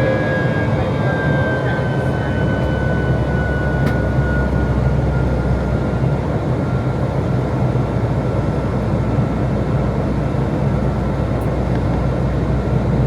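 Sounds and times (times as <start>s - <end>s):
airplane cabin engine drone: 0.0s - 13.0s.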